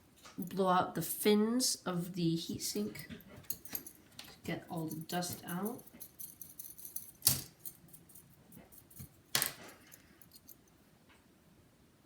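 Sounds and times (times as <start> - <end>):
metallic clicks and rattles: 3.1 - 10.8.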